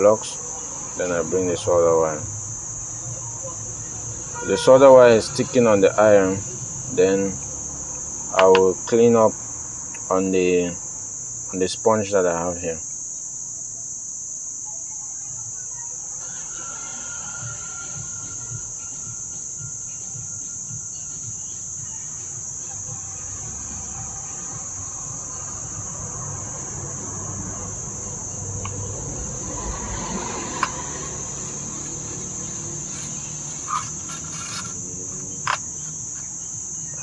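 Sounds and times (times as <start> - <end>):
crickets trilling: 0.0 - 37.0.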